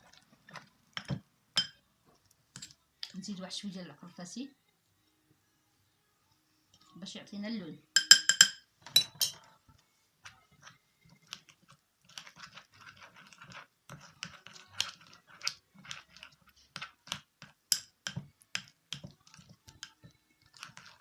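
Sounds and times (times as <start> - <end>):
spoon scraping paste in a bowl: 10.2 - 21.0.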